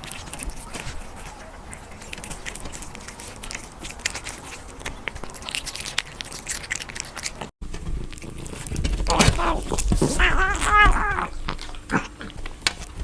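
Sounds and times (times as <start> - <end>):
cat crunching and chewing food: 0.0 - 13.0.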